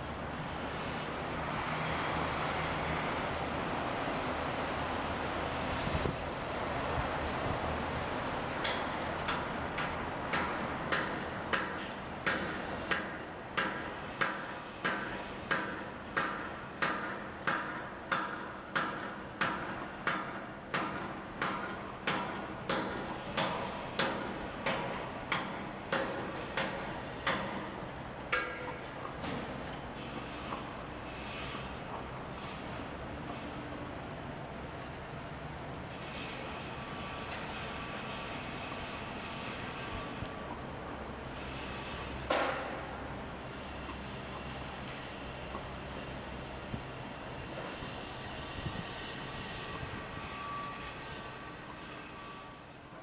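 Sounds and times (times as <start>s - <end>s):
construction site rumble: 0.0s - 53.0s
hammer striking steel: 8.6s - 28.9s.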